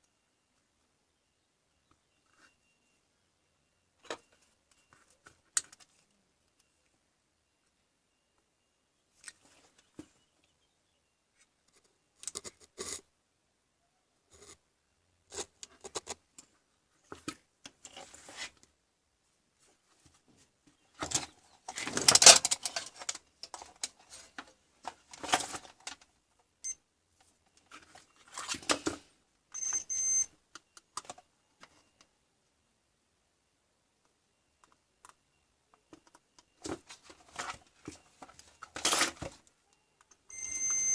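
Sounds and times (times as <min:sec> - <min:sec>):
high beep: 0:29.5 - 0:30.3, 0:39.7 - 0:40.9
objects being handled: 0:35.8 - 0:40.2.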